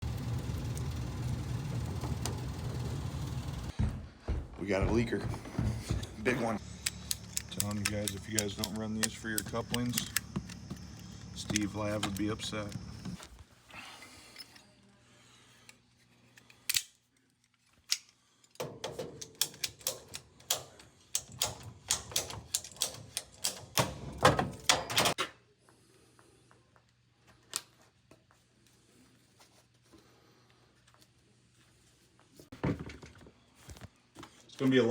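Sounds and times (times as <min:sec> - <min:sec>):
sharp clicks and clacks: 0:06.8 - 0:12.9.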